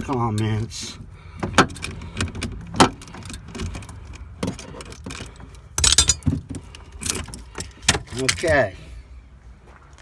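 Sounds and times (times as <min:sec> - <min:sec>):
metal parts clanking and jangling: 0:01.4 - 0:08.7.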